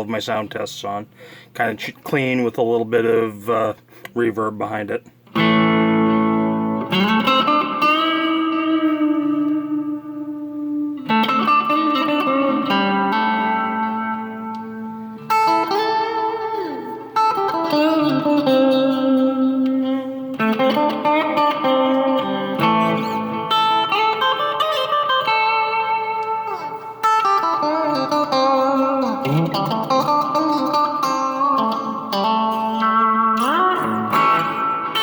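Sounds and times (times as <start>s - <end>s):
clean electric guitar: 5.2s - 35.0s.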